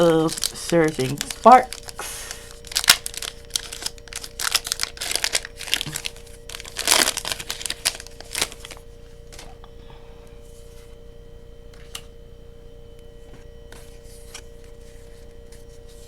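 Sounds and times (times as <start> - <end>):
foil wrapper crinkling and tearing: 0.0 - 9.5.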